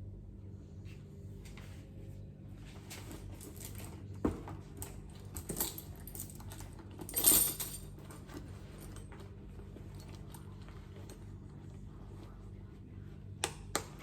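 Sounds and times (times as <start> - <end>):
soft bag handling noises: 0.7 - 14.0
metal chain and keys clinking: 3.3 - 4.0, 4.8 - 9.1.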